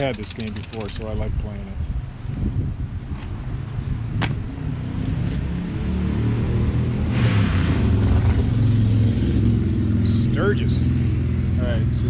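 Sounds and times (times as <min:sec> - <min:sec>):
vehicle engine rumble: 0:00.0 - 0:12.0.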